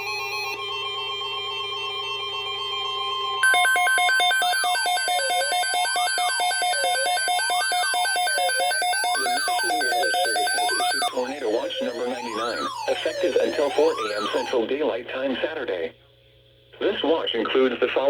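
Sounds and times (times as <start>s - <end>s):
rapid two-pitch electronic beeping: 3.4s - 14.6s
faint broadcast voice: 8.6s - 16.0s
siren-like sweeping tone: 11.0s - 14.6s.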